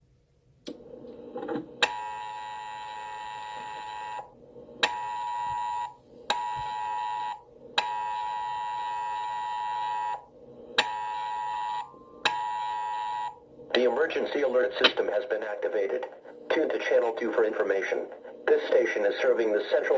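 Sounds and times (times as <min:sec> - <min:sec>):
two-tone alarm: 0:01.8 - 0:13.4.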